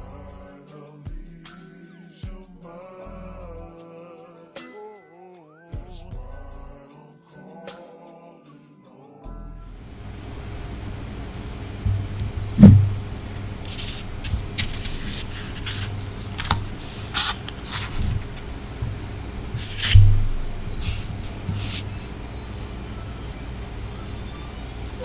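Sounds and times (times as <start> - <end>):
heavy thump: 9.8 - 25.0
low steady hum: 9.8 - 25.0
wet smacking noises: 9.8 - 25.0.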